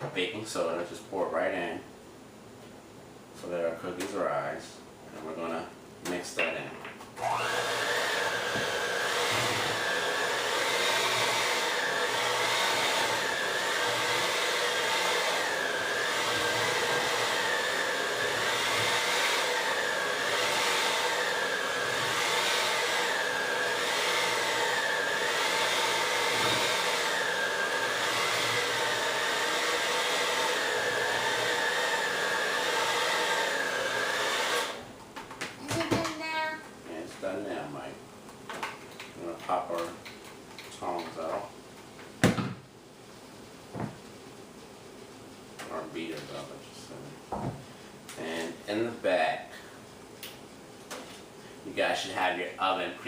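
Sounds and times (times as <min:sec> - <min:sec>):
electric hand mixer whining: 0:07.2 - 0:34.9.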